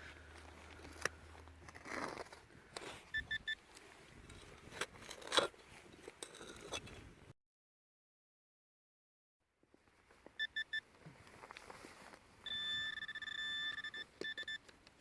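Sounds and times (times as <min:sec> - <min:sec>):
metal detector beeps and tone: 0:03.1 - 0:03.7, 0:10.4 - 0:10.9, 0:12.4 - 0:14.7.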